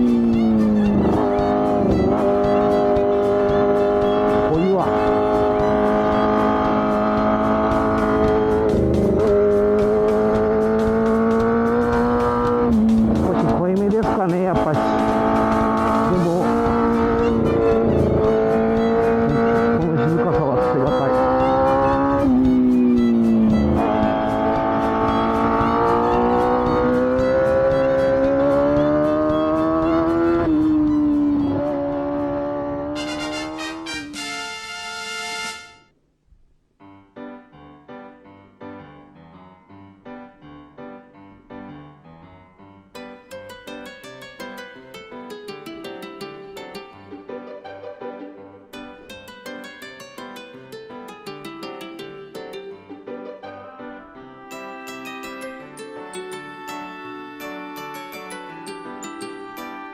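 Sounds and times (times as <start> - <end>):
minibike engine at high revs: 0.0 - 34.2
music: 0.0 - 35.9, 36.8 - 59.9.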